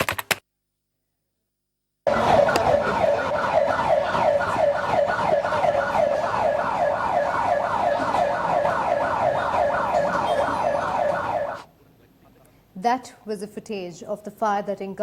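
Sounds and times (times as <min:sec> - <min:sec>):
siren yelping: 0:02.1 - 0:11.7.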